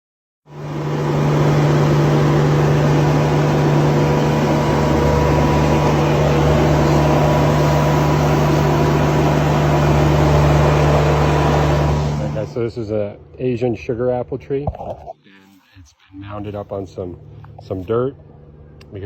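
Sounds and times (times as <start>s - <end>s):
engine running loudly: 0.5s - 13.3s.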